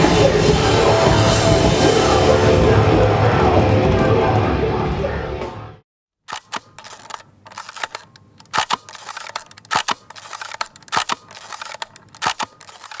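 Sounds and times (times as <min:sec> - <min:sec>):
sharp clicks and knocks: 0:06.3 - 0:13.0.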